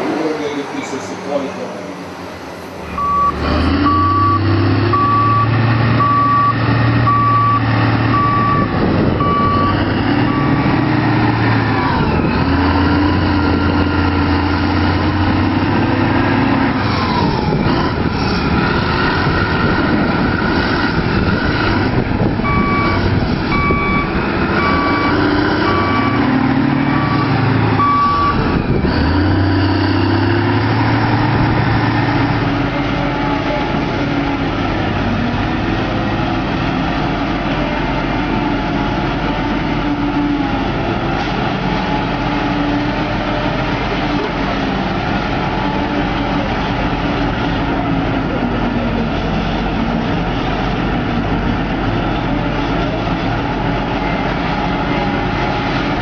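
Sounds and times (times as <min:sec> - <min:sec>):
diesel machinery engine: 0:00.0 - 0:56.0
reversing alarm beeping: 0:02.8 - 0:10.7, 0:22.4 - 0:28.5.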